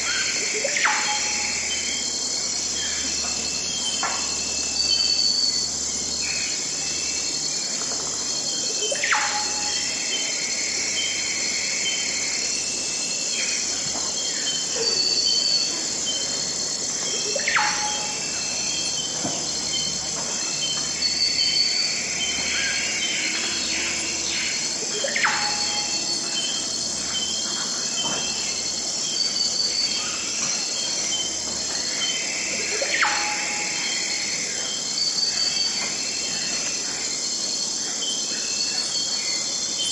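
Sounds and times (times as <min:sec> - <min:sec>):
insect chorus: 0:00.0 - 0:39.9.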